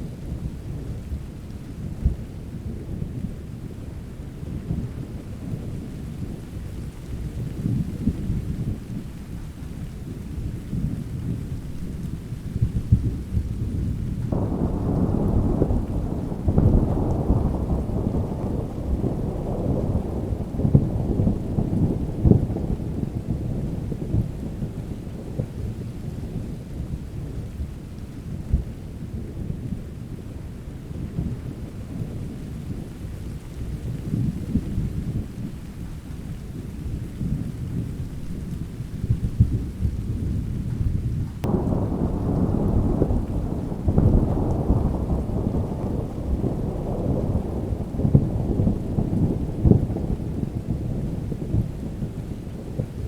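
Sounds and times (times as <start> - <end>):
rain: 0.0 - 53.0
deep rolling thunder: 10.4 - 27.7, 36.8 - 53.0.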